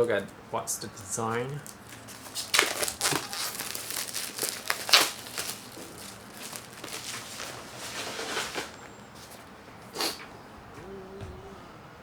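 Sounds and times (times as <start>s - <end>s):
plastic wrap crinkling: 1.3s - 9.0s.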